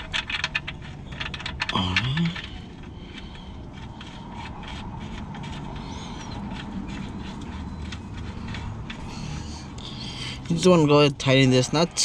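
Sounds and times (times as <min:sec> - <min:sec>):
drain bolt clicking and scraping: 0:00.0 - 0:11.4.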